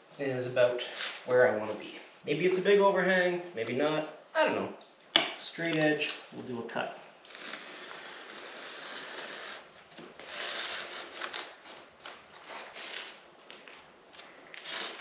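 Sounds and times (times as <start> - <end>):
carpet being cut rasping: 7.3 - 9.6.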